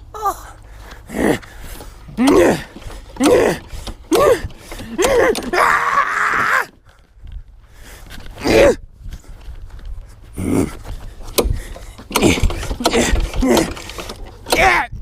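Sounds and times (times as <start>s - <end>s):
short groaning vocal sounds: 0.1s - 6.7s, 10.3s - 10.9s, 11.5s - 15.0s.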